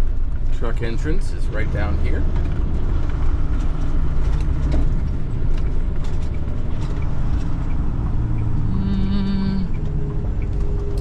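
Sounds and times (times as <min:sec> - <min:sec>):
diesel truck engine running: 0:00.0 - 0:11.0
light rattles and clicks: 0:00.3 - 0:08.2.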